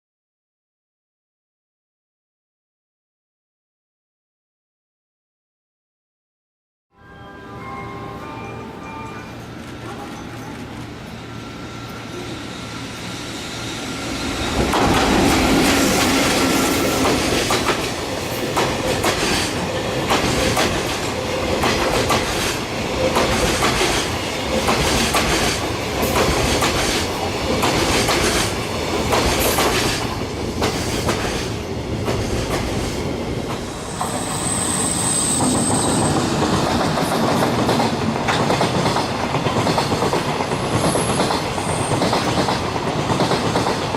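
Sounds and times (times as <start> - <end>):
high wheel squeal: 11.1 - 17.3, 33.7 - 36.4
train wheels clacking over rails: 13.0 - 34.3, 35.3 - 43.9.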